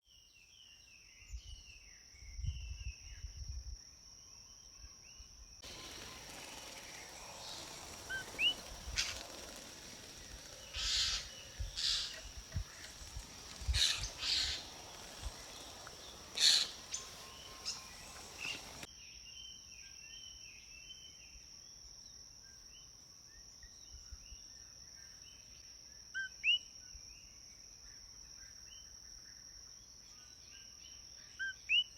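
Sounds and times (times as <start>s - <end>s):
insect drone: 4.2s - 18.9s
loud sharp calls: 5.6s - 18.9s
small birds chirping: 5.6s - 18.9s.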